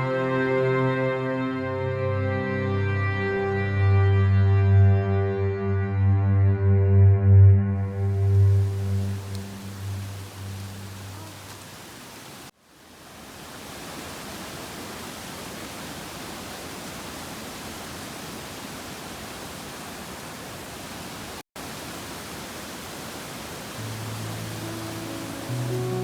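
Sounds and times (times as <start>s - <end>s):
music: 0.0s - 11.2s, 23.8s - 26.0s
waterfall roaring: 7.9s - 26.0s.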